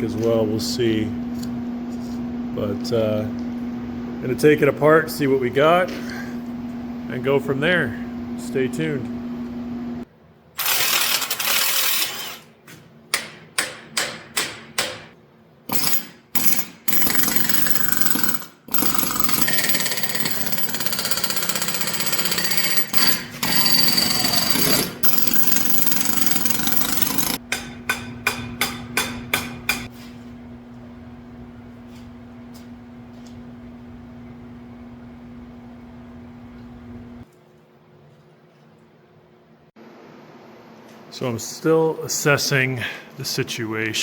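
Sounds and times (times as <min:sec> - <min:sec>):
rapid tool rattling: 0:10.6 - 0:12.4, 0:15.7 - 0:27.4
hammer striking metal: 0:13.1 - 0:15.2, 0:27.3 - 0:29.9.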